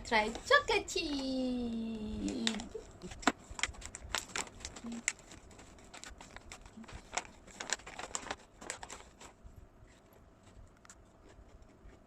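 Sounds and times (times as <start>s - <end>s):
packaging crinkling: 2.2s - 9.4s.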